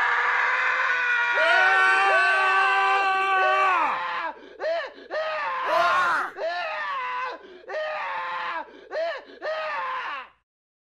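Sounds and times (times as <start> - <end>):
man screaming: 1.2 - 4.4, 5.2 - 8.7.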